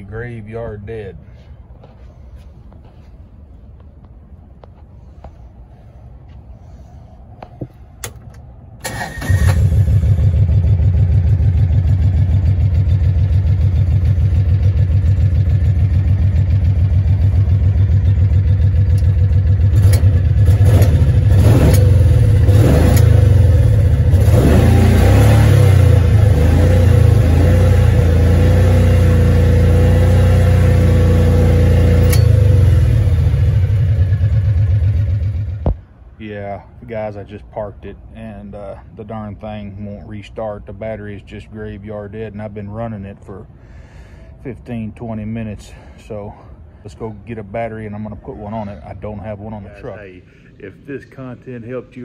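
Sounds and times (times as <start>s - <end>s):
utility vehicle engine running: 8.0s - 35.8s.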